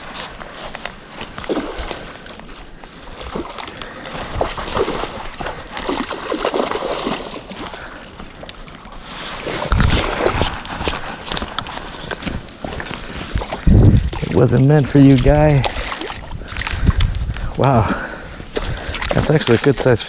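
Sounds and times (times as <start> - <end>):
fish splashing in shallow water: 0.7 - 17.4, 18.0 - 20.0.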